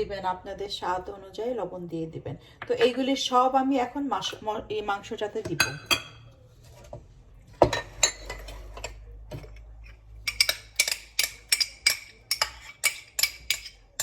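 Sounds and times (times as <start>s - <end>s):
spoon clinking against dishes: 5.4s - 6.3s, 7.6s - 14.0s.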